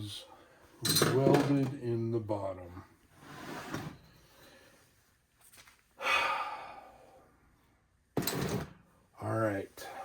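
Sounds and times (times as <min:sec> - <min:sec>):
man sighing: 0:06.0 - 0:07.1
short breath: 0:06.0 - 0:07.3.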